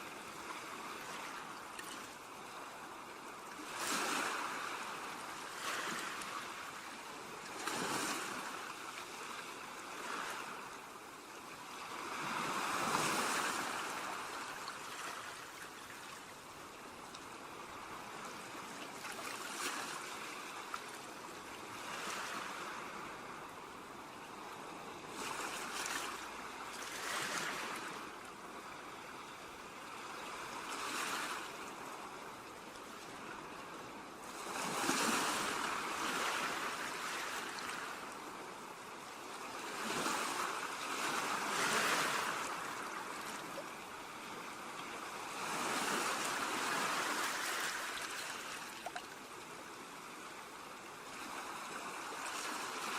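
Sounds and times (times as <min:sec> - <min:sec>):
ocean surf breaking on beach: 0:11.8 - 0:14.8.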